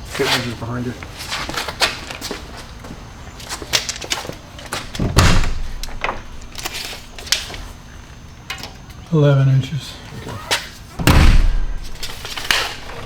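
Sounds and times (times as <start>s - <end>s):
heavy thump: 5.0s - 6.3s, 11.0s - 12.0s.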